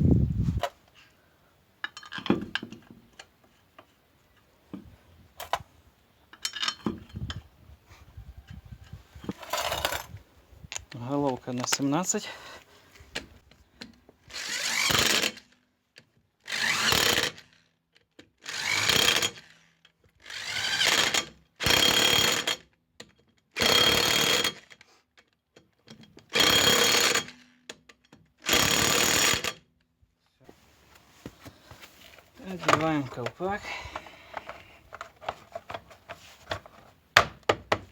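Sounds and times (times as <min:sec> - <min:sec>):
impact wrench driving bolts: 0:09.3 - 0:10.2.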